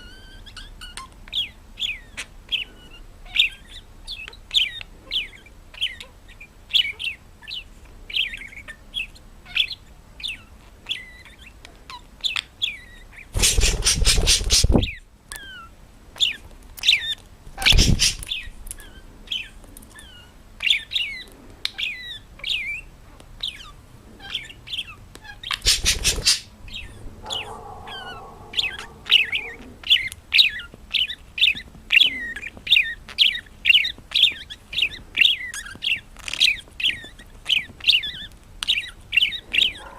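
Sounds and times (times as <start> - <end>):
small bird chirping: 0.0 - 39.9
rustling noise bursts: 13.4 - 14.9
low-pitched bird call: 25.6 - 29.9.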